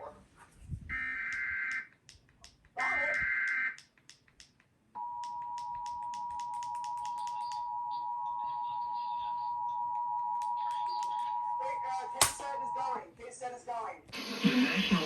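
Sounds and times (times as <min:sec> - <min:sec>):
scattered clicks: 0:01.3 - 0:07.6.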